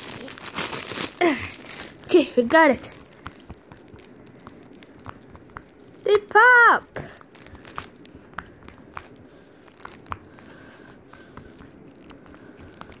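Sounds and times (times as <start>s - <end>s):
fidget toy bubbles popping: 2.5s - 5.8s.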